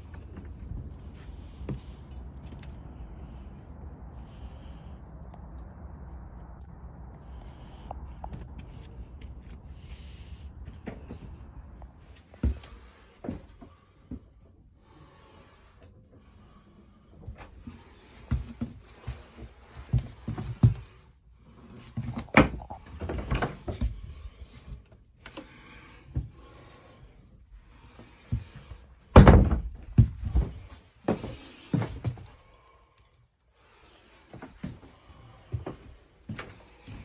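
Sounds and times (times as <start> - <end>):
heavy thumps: 28.3 - 32.3.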